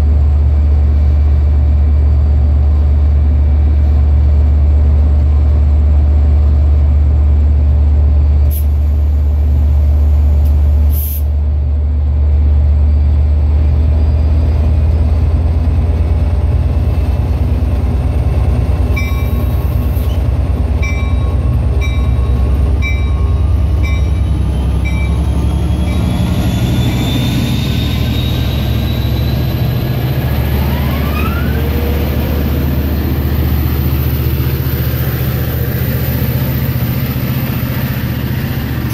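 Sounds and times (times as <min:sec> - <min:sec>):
diesel locomotive engine running: 0:00.0 - 0:38.9
rising whines of train: 0:00.0 - 0:38.9
bell ringing: 0:19.0 - 0:19.6, 0:20.8 - 0:26.1.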